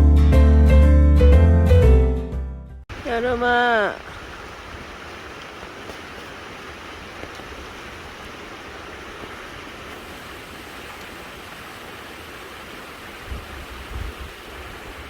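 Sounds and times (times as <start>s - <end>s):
creek flowing: 2.9s - 15.0s
wind rumble on microphone: 13.1s - 15.0s.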